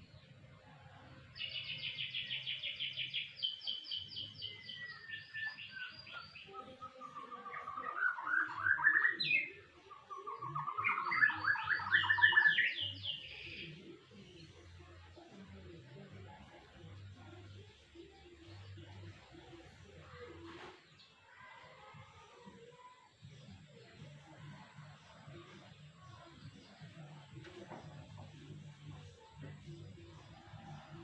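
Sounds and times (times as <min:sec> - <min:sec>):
canary singing trills: 0:01.4 - 0:14.2.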